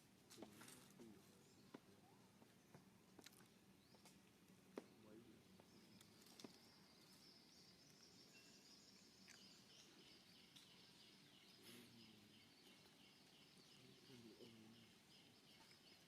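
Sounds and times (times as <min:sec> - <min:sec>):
faint high chirp: 0:05.6 - 0:16.0.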